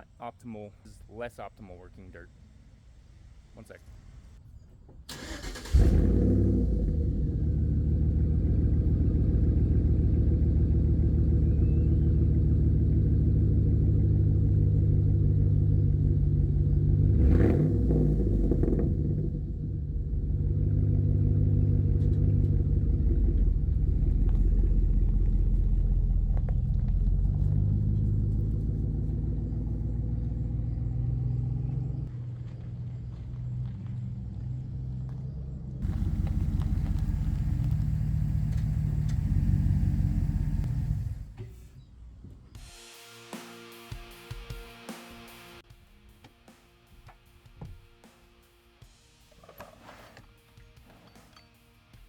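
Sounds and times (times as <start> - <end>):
engine revving: 5.1 - 32.1, 33.3 - 41.4
truck engine starting and idling: 5.1 - 41.6.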